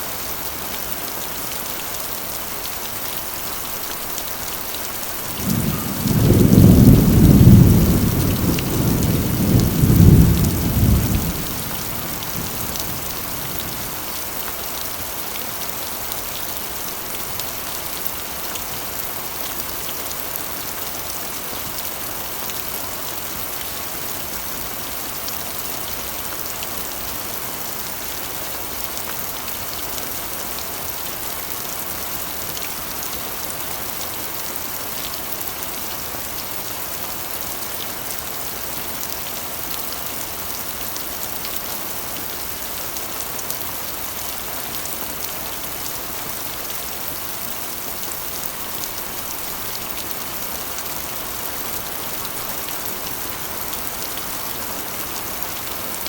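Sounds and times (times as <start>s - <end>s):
rain on a metal roof: 0.0s - 56.0s
low rumble of thunder: 5.2s - 14.1s.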